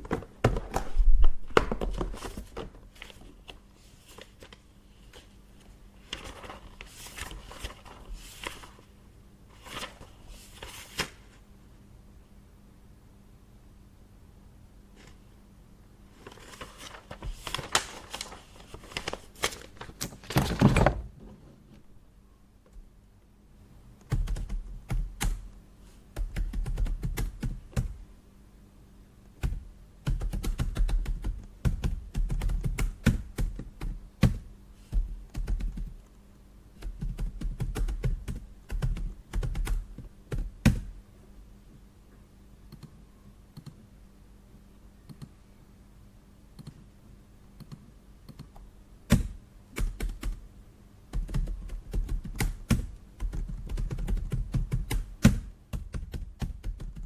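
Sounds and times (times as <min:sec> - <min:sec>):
faint low hum: 0:00.0 - 0:57.0
typing on keyboard: 0:24.0 - 0:25.4, 0:26.2 - 0:27.9, 0:29.4 - 0:34.0, 0:35.3 - 0:36.0, 0:36.8 - 0:40.5, 0:51.1 - 0:57.0.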